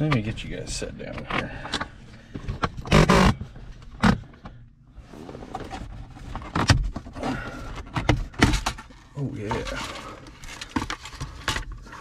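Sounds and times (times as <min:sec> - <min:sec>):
phone scraping: 0:02.8 - 0:04.2.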